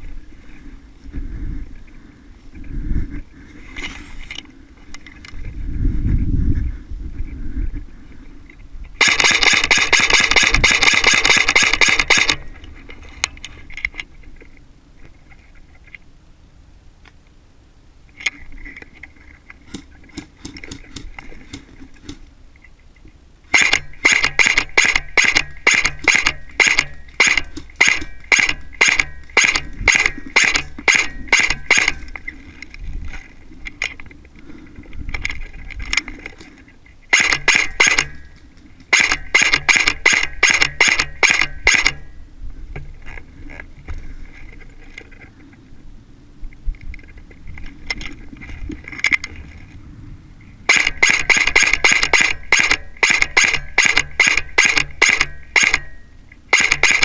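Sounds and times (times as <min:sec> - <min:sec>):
airsoft gun firing: 0:09.0 - 0:12.5, 0:23.5 - 0:32.1, 0:37.1 - 0:38.2, 0:38.9 - 0:42.1, 0:50.7 - 0:57.0.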